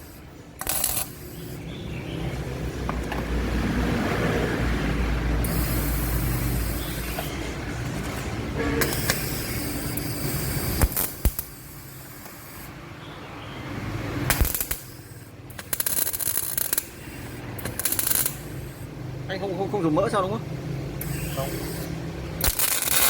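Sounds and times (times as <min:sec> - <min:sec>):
sharp clicks: 0:00.0 - 0:01.6, 0:09.9 - 0:11.6, 0:14.3 - 0:14.9, 0:15.5 - 0:18.6, 0:21.0 - 0:23.0
welder arc crackling: 0:00.0 - 0:01.6, 0:05.3 - 0:07.5, 0:08.8 - 0:12.7, 0:14.2 - 0:18.9, 0:21.0 - 0:23.0.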